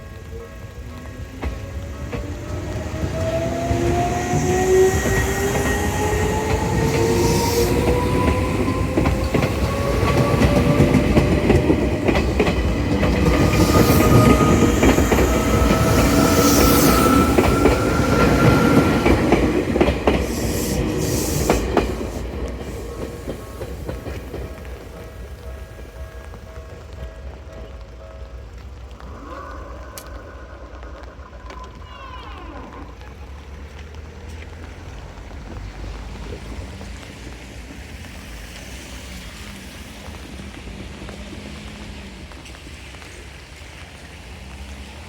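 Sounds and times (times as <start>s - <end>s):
wheels clacking over rail joints: 0.6s - 31.9s
train motor whine: 1.5s - 24.8s.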